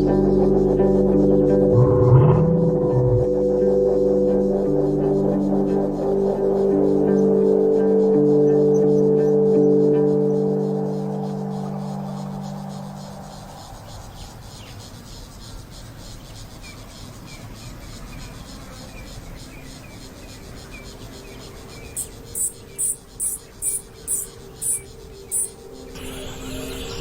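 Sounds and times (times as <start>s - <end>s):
ringing musical tone: 1.2s - 13.7s, 22.0s - 27.0s
high-pitched chirps: 21.9s - 27.0s.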